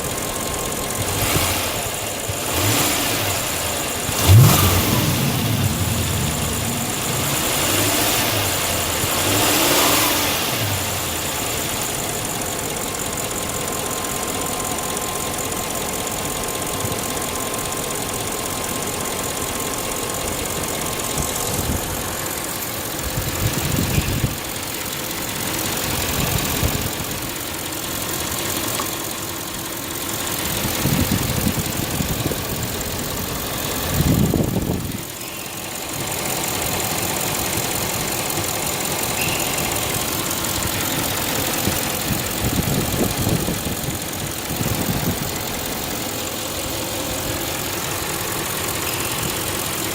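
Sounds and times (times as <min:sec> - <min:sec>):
car engine idling with throttle blips: 0:00.0 - 0:49.9.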